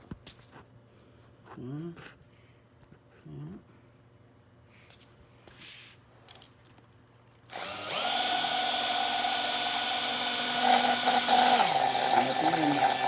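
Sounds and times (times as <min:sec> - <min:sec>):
electric drill whining: 0:07.4 - 0:13.0.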